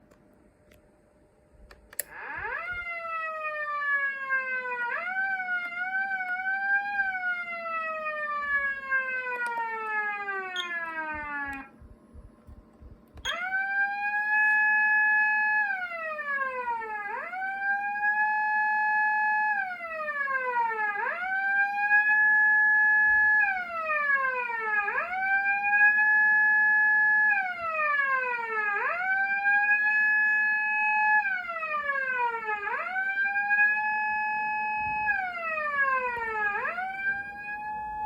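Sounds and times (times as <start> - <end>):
police siren wail: 2.0 - 11.9, 13.2 - 38.0.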